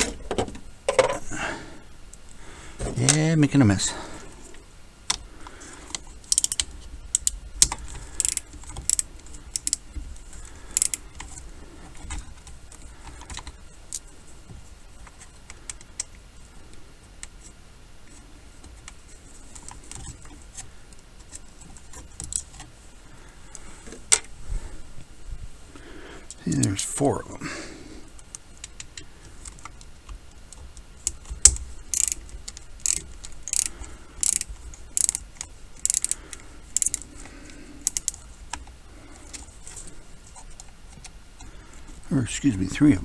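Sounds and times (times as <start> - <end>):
screwdriver and screws clicking: 6.3 - 9.8, 31.0 - 36.2, 36.8 - 38.2.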